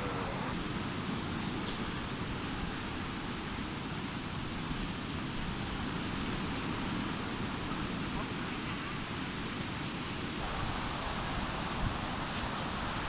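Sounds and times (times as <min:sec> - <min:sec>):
beach background noise: 0:00.0 - 0:00.8, 0:10.4 - 0:13.0.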